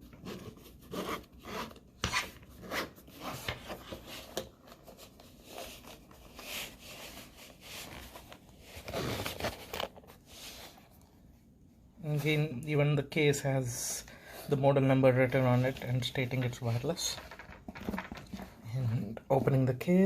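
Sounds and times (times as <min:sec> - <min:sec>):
packaging box rubbing and scraping: 0:00.1 - 0:04.3, 0:05.0 - 0:10.8.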